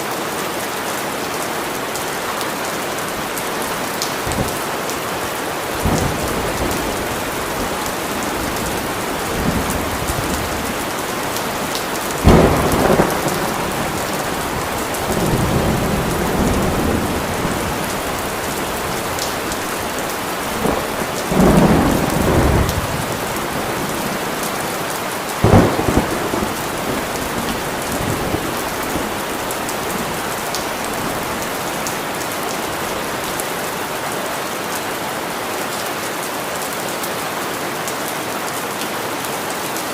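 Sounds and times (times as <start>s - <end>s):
steady rain: 0.0s - 39.9s
low thunder rumble: 5.7s - 24.8s, 25.4s - 32.2s
sharp thunder clap: 12.1s - 18.0s, 25.4s - 29.2s.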